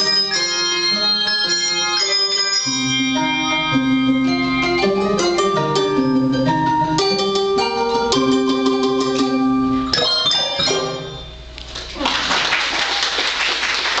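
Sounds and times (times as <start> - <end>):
handbell choir ringing chords: 0.0 - 3.8
audience applause: 11.8 - 14.0.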